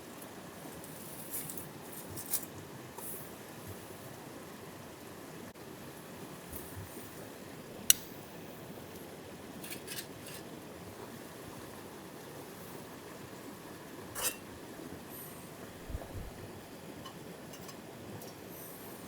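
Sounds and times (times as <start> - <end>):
steady low hiss: 2.9 - 19.0.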